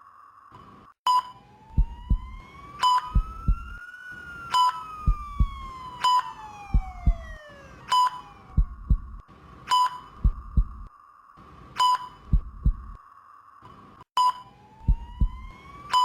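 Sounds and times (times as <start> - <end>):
siren wailing: 1.4 - 9.2, 14.5 - 16.0
heartbeat thumps: 1.7 - 2.4, 3.0 - 3.8, 5.0 - 5.8, 6.6 - 7.4, 8.5 - 9.2, 10.2 - 10.9, 12.2 - 13.0, 14.8 - 15.6.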